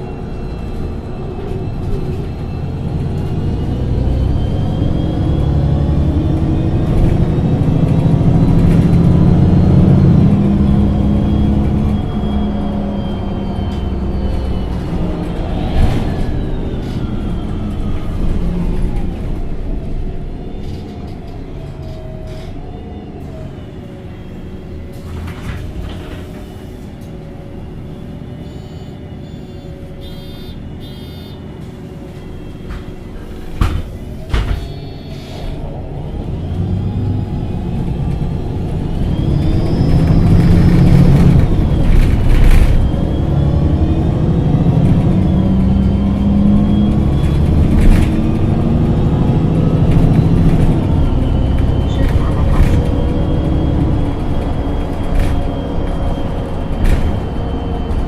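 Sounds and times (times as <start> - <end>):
bus pulling away through gears: 0.0 - 58.0
bus engine idling: 43.9 - 58.0.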